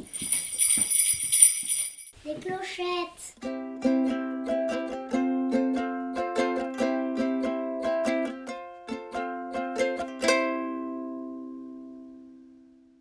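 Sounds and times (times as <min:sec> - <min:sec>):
plucked string instrument: 0:03.4 - 0:12.2.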